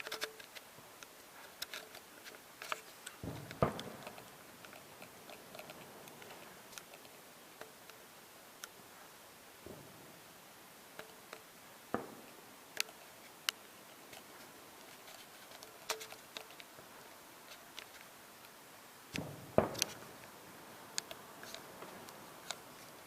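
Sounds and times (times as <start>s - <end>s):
fireworks cracking and popping: 0.0s - 23.0s
deep firework booms: 3.2s - 6.7s, 19.2s - 20.3s.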